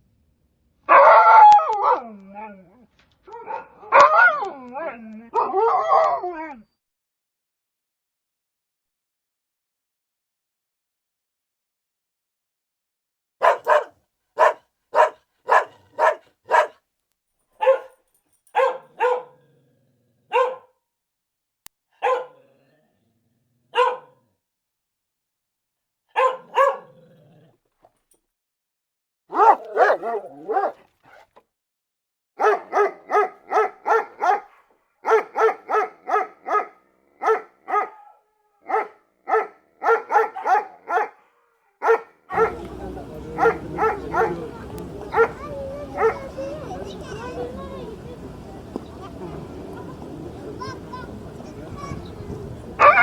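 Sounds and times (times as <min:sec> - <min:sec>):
dog barking: 0:00.9 - 0:02.1, 0:03.3 - 0:04.4, 0:13.4 - 0:16.8, 0:17.6 - 0:19.6, 0:20.3 - 0:20.7, 0:22.0 - 0:22.6, 0:23.7 - 0:24.3, 0:26.1 - 0:27.2, 0:29.3 - 0:31.3, 0:32.4 - 0:46.6, 0:52.8 - 0:53.0.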